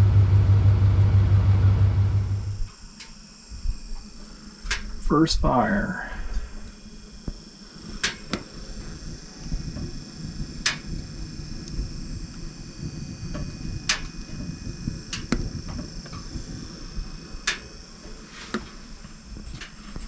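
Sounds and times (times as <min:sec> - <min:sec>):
low rumbling noise: 0:00.0 - 0:20.0
wood fire crackling: 0:06.3 - 0:20.0.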